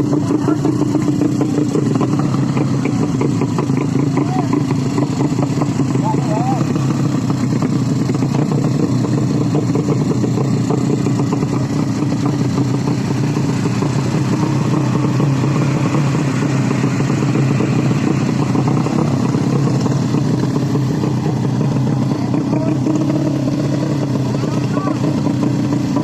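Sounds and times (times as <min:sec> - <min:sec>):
motorcycle engines revving high: 0:00.0 - 0:26.0.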